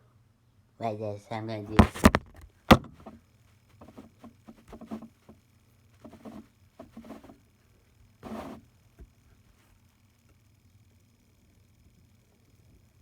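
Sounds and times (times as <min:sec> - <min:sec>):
plug knocking lightly: 0:01.7 - 0:03.1.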